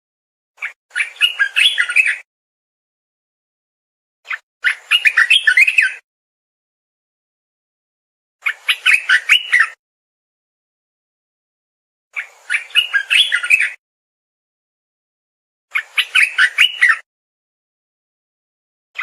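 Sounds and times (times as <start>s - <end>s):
bulbul singing whistled notes: 0.6s - 2.3s, 4.3s - 6.0s, 8.4s - 9.8s, 12.2s - 13.8s, 15.7s - 17.1s.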